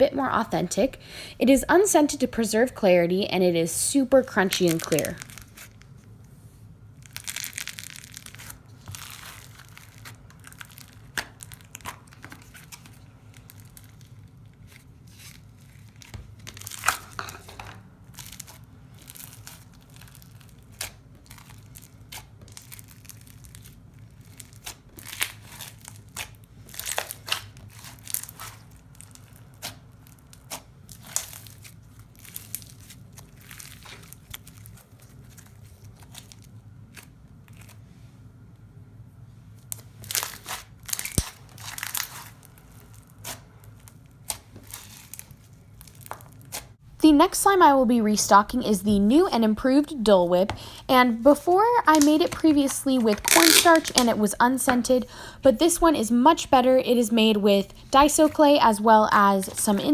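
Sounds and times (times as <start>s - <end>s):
slime crackling and popping: 4.3s - 6.0s, 7.0s - 17.4s, 18.0s - 37.8s, 39.6s - 46.8s, 50.4s - 55.0s.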